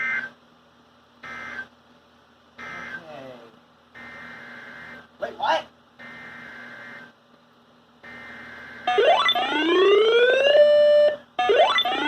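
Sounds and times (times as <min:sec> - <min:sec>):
rising electronic alarm tone: 0:08.0 - 0:12.0.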